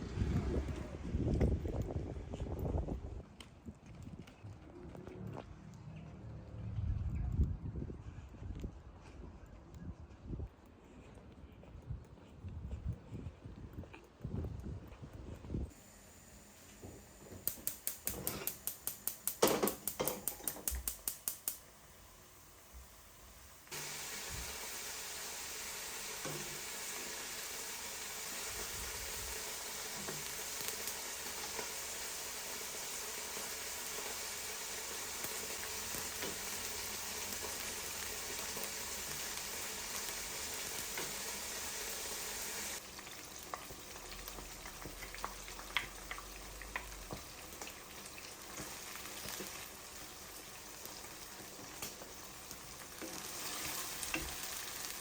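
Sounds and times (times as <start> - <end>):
food sizzling in a pan: 15.7 - 55.0.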